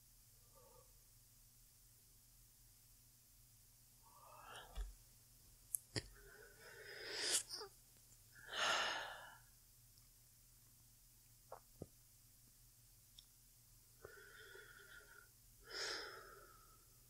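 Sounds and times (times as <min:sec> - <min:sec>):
slow sleepy breathing: 0:04.0 - 0:04.8, 0:08.4 - 0:09.5, 0:14.0 - 0:17.0.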